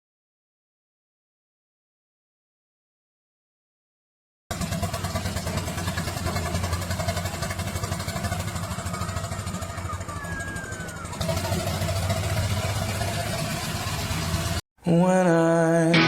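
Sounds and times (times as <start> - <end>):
engine with fast pulsing note: 4.5 - 14.6.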